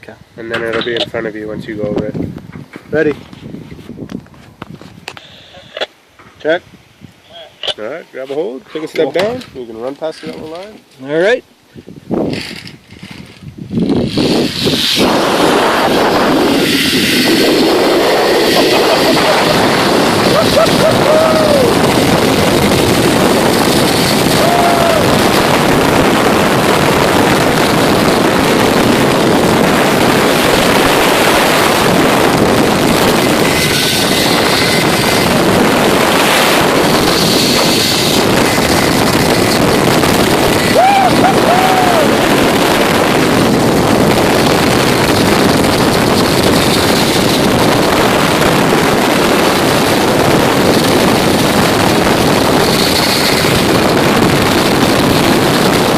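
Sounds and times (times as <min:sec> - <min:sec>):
wind rushing over microphone: 0:00.0 - 0:55.9
zip line trolley whirring on cable: 0:12.3 - 0:55.9.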